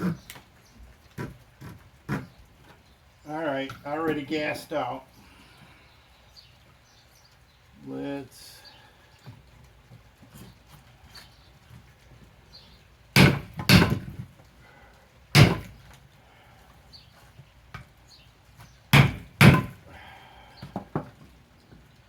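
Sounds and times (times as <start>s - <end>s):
blade chopping dry wood: 13.2s - 14.3s, 15.4s - 15.8s, 18.9s - 19.8s.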